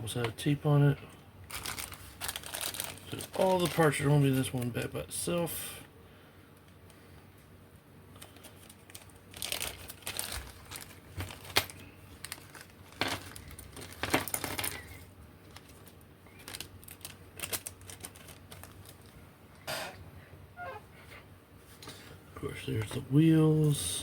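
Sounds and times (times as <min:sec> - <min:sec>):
plastic bag crinkling: 0:01.5 - 0:04.8, 0:08.2 - 0:20.0.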